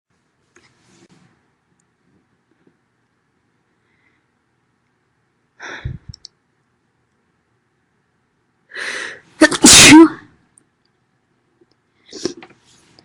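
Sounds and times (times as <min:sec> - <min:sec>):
woman breathing in: 0:08.7 - 0:09.3
woman sneezing loudly: 0:09.4 - 0:10.3.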